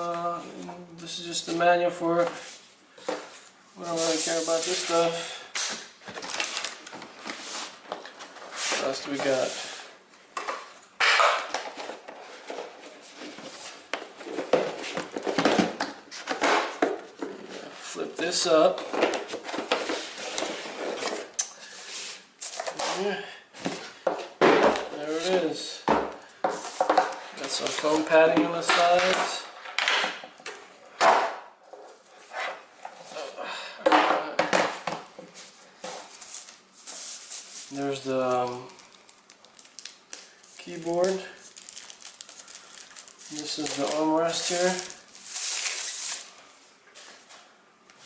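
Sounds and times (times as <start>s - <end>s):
cardboard packaging rustling: 35.3s - 46.4s.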